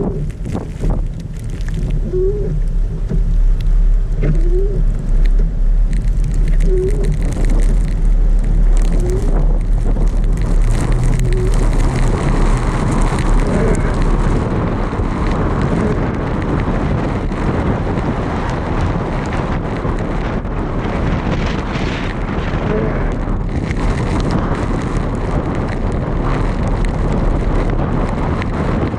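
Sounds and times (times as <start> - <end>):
car engine and road rumble: 0.0 - 28.9
wavering squeak: 2.0 - 2.6, 4.2 - 4.8, 6.5 - 7.3.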